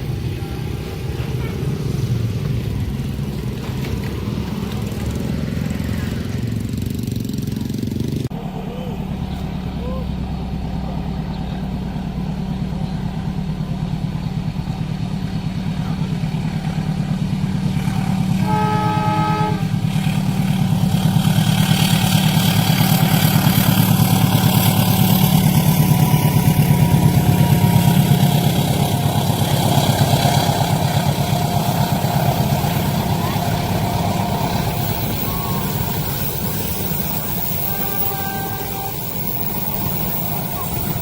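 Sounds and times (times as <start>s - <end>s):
train wheels on rails rumbling: 0.0s - 41.0s
low engine hum: 7.4s - 41.0s
diesel train horn: 17.0s - 41.0s.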